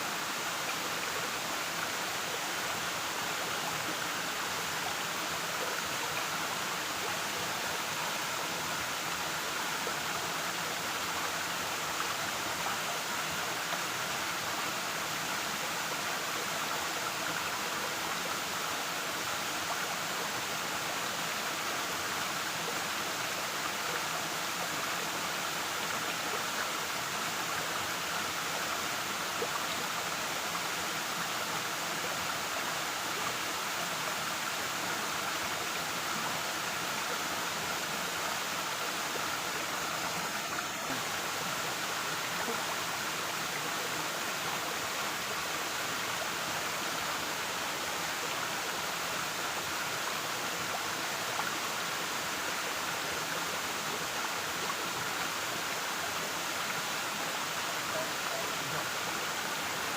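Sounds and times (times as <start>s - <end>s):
waterfall rushing: 25.3s - 59.9s.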